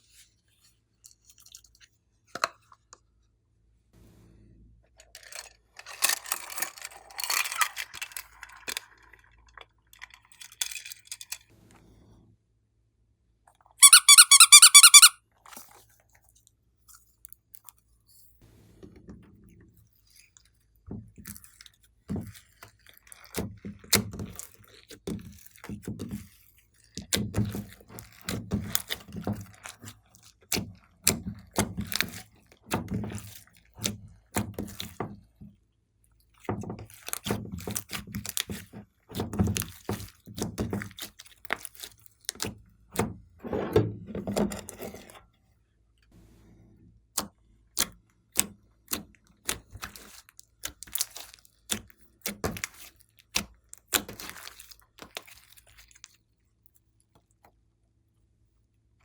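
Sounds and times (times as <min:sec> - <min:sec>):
slime squelching by hand: 0:49.4 - 0:56.2.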